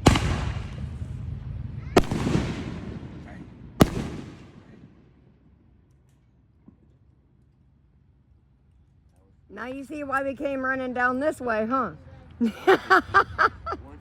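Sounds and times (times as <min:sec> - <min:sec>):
fireworks bangs: 0:00.0 - 0:05.8.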